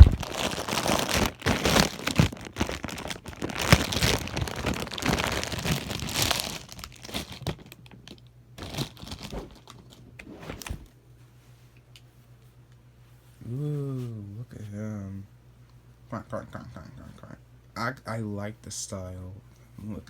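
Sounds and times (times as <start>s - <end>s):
packaging crinkling and tearing: 0.0s - 10.8s.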